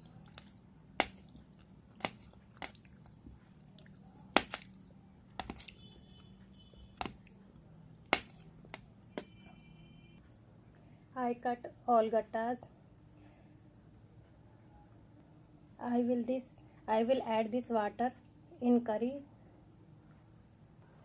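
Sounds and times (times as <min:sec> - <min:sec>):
knife tapping on cutting board: 0:05.4 - 0:05.7.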